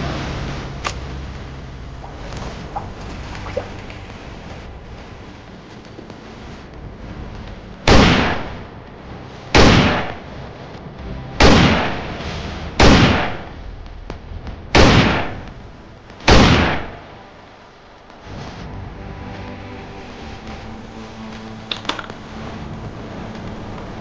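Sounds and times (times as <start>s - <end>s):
gunshots: 7.9s - 8.7s, 9.5s - 10.3s, 11.4s - 13.6s, 14.7s - 15.6s, 16.2s - 17.2s.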